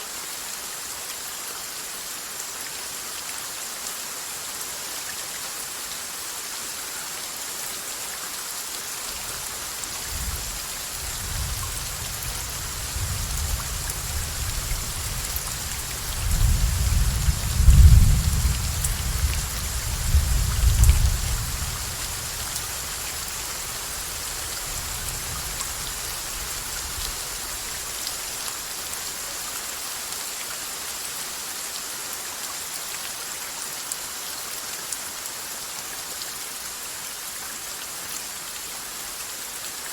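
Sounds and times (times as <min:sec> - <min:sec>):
steady rain falling: 0:00.0 - 0:39.9
rolling thunder: 0:16.3 - 0:21.8.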